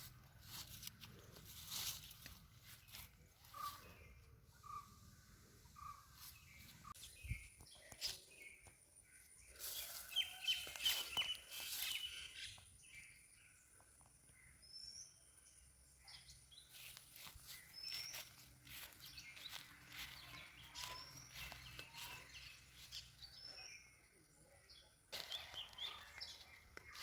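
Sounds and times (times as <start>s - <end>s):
rustling: 0.0s - 4.0s
small birds chirping: 0.0s - 27.0s.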